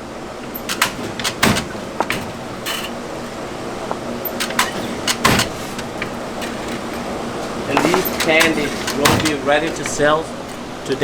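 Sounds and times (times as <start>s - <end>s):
steady machine hum: 0.0s - 11.0s
sharp knocks and clatters: 0.4s - 11.0s.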